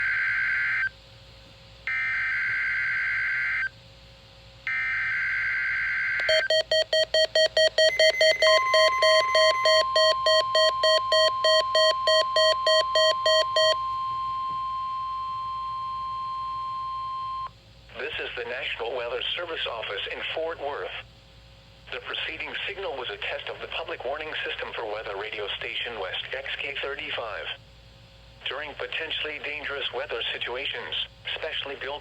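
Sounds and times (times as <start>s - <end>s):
rapid electronic beeping: 6.2s - 13.8s
steady high tone: 6.2s - 17.4s
data tone bursts: 6.2s - 17.5s.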